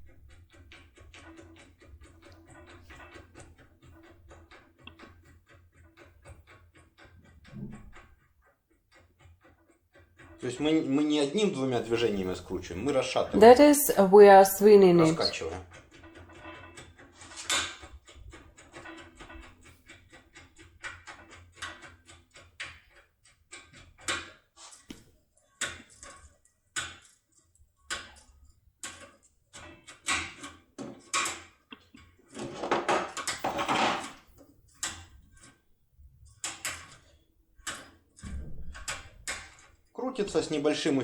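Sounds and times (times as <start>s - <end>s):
metal scraping rattle: 7.4s - 8.1s.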